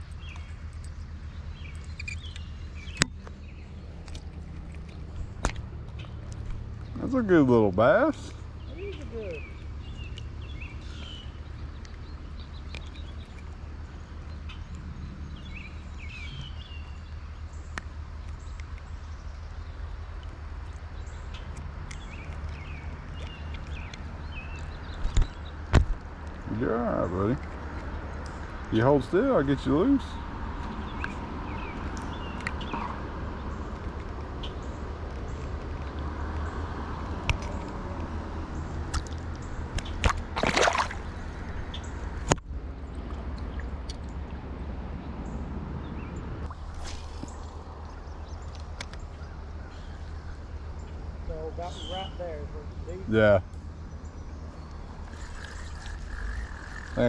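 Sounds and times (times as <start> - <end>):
bird chirps: 0.0 - 6.2, 8.2 - 17.8, 45.9 - 57.0
creek low rumble: 0.0 - 57.0
short water splash: 39.8 - 41.6, 46.4 - 47.7.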